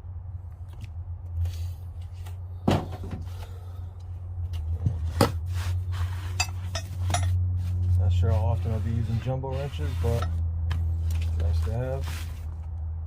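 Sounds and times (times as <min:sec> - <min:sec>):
steady low hum: 0:00.0 - 0:13.0
wrenches and packaging rustling: 0:04.6 - 0:12.8.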